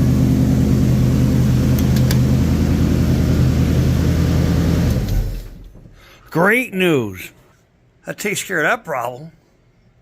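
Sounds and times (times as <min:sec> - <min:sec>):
engine running down to stop: 0:00.0 - 0:05.7.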